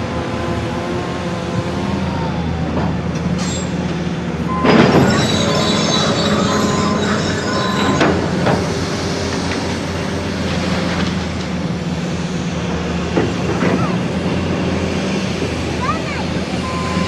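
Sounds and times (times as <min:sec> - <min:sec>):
diesel engine running: 0:00.0 - 0:17.0
metal squealing: 0:04.5 - 0:09.5
metal and debris clanking: 0:04.5 - 0:09.8.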